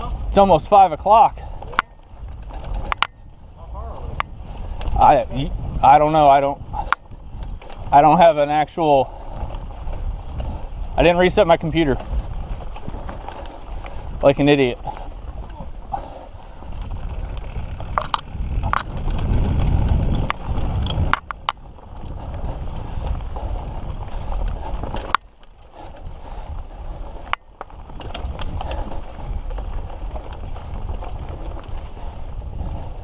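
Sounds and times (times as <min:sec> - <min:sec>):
bike tyres and frame rattling: 0:00.0 - 0:33.0.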